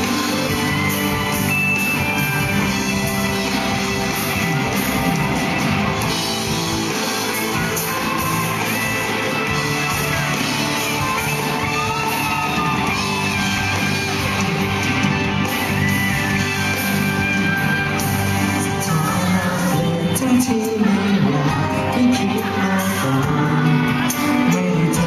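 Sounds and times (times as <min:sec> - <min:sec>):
electric guitar: 0:00.0 - 0:25.0
live band music: 0:00.0 - 0:25.0
person singing: 0:06.4 - 0:25.0.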